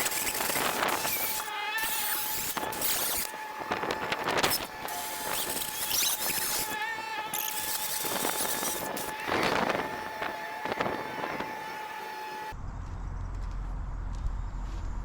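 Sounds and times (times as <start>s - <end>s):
angle grinder cutting steel: 0.0s - 12.5s
low hum: 0.6s - 15.0s.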